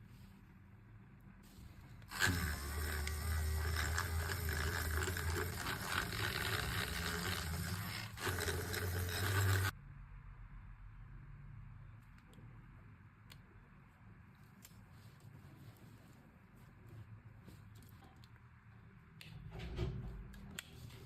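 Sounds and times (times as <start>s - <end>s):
small electric tool motor: 2.1s - 9.8s.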